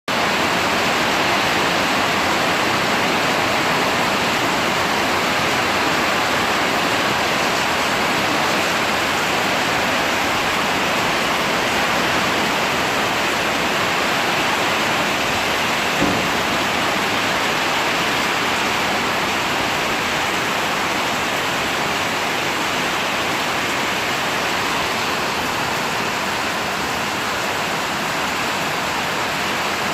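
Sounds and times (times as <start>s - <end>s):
heavy rain pouring: 0.1s - 29.9s
brief knock: 16.0s - 16.4s.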